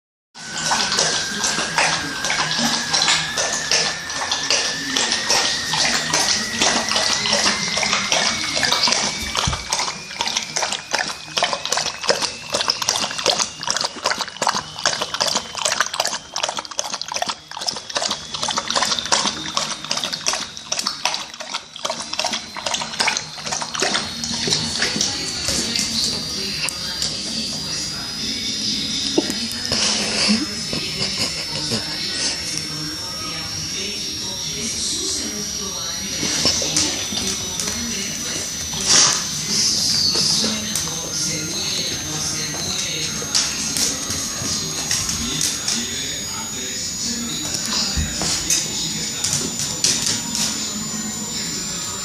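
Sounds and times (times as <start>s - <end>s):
water running and splashing: 0.4s - 27.7s
thin tone rising in pitch: 0.4s - 52.0s.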